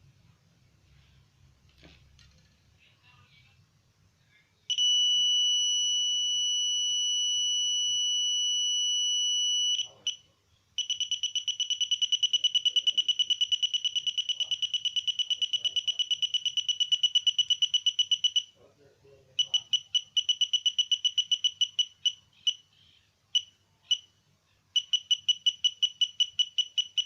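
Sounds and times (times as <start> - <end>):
metal detector pulsing beep: 4.7 - 10.2, 10.8 - 18.5, 19.4 - 22.6, 24.8 - 27.0.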